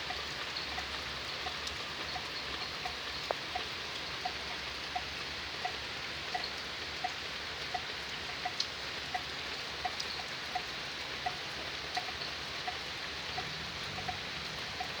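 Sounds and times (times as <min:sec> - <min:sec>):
rain hissing: 0:12.4 - 0:15.0.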